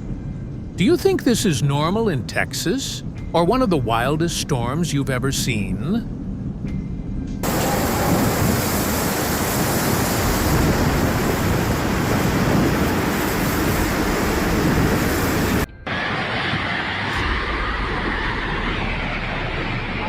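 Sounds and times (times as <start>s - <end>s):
storm rushing noise: 7.4s - 20.0s.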